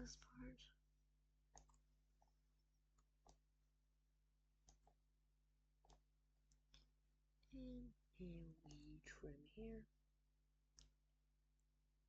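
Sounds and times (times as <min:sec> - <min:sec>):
low steady hum: 0:00.0 - 0:00.7
computer mouse clicks: 0:01.5 - 0:02.3, 0:04.6 - 0:05.0.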